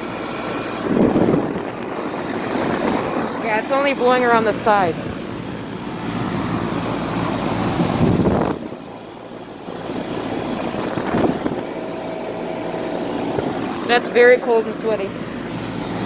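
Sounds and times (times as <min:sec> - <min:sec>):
compressor hum: 0:00.0 - 0:16.0
fan rushing: 0:00.0 - 0:16.0.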